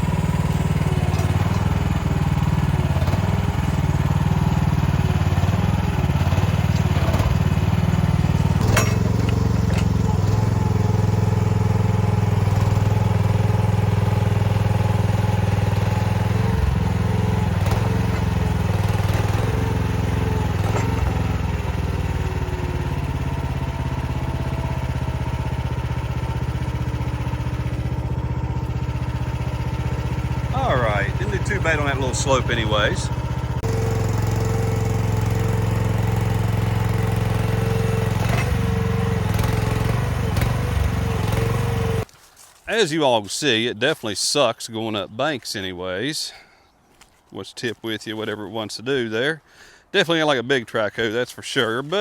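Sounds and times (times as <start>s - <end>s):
excavator engine running under load: 0.0s - 42.1s
hydraulic whining: 0.0s - 42.1s
sharp metal clanks: 8.6s - 10.8s.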